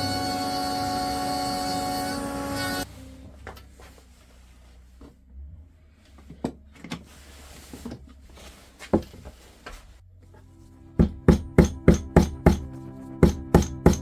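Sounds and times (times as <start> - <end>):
faint workshop noise: 0.0 - 14.0
music with percussive beat: 11.0 - 14.0
wooden knocks: 11.0 - 14.0.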